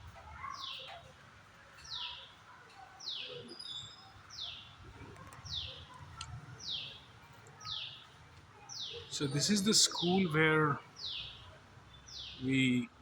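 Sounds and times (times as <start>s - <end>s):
second bird chirping: 3.0s - 10.3s.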